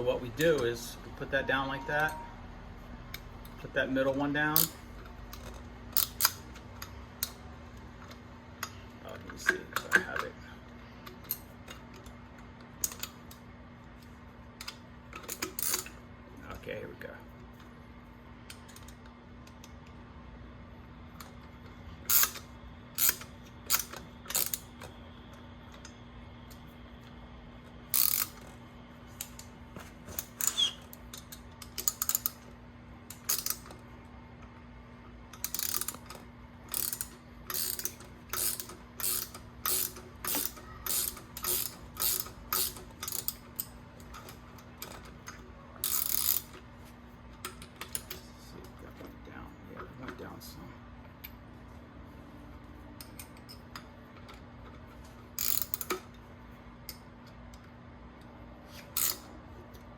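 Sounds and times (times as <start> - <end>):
ratchet wrench clicking: 4.5 - 6.6, 12.8 - 13.3, 14.6 - 16.0, 22.1 - 24.7, 27.9 - 28.5, 30.2 - 32.4, 33.1 - 33.8, 35.4 - 45.0, 45.8 - 46.6, 55.3 - 56.1, 58.7 - 59.3.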